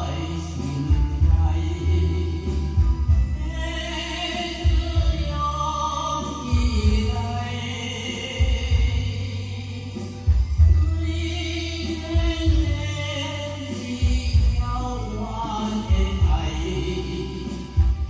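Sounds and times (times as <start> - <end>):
person singing over backing track: 0.0 - 18.0.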